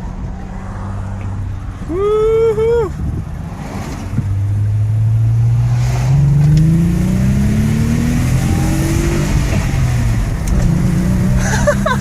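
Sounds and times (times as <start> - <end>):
car engine accelerating hard: 2.3 - 12.0.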